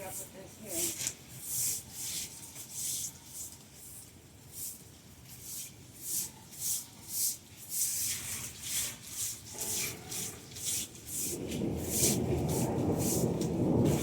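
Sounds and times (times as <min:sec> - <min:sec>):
broom sweeping leaves on pavement: 0:00.0 - 0:03.5, 0:05.4 - 0:14.0
thunder rumble: 0:11.2 - 0:14.0.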